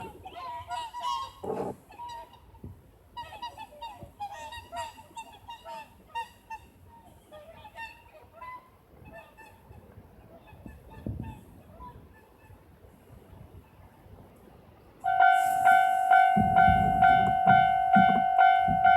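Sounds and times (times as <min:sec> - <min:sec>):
swans calling: 0:00.0 - 0:12.8, 0:15.0 - 0:18.9
low thud: 0:16.3 - 0:18.9.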